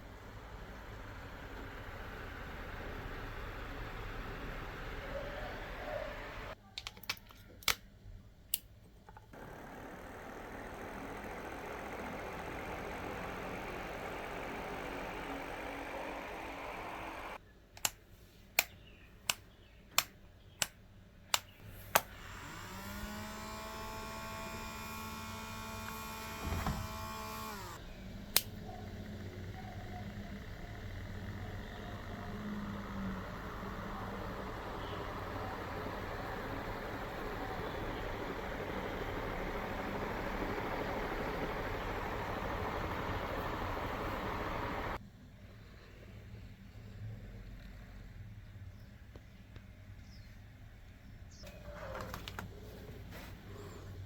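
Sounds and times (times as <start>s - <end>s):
motor hum rising in pitch: 0.0s - 6.6s, 9.3s - 17.4s, 22.0s - 45.0s
small fan motor whirring: 0.0s - 6.6s, 9.1s - 17.4s, 21.6s - 45.0s
sharp single clicks: 18.6s - 22.1s.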